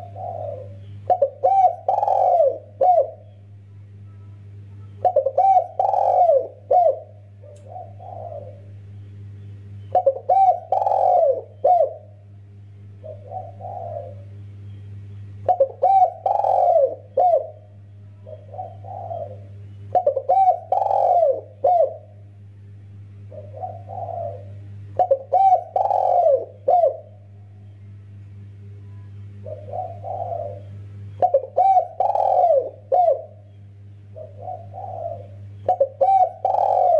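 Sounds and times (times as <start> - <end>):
dove cooing: 0.0 - 3.4, 5.0 - 8.8, 9.9 - 12.2, 13.0 - 14.4, 15.4 - 22.2, 23.2 - 27.4, 29.4 - 33.5, 34.1 - 36.9
steady low hum: 0.0 - 36.9.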